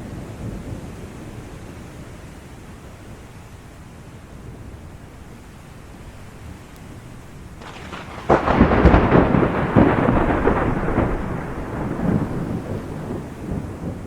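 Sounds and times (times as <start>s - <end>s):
steady rain: 0.0s - 14.0s
thunder crack and rumble: 6.9s - 14.0s.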